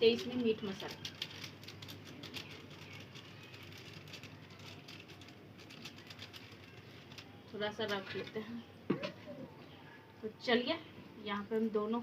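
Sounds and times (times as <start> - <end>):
curry crackling in a pot: 0.0 - 8.6.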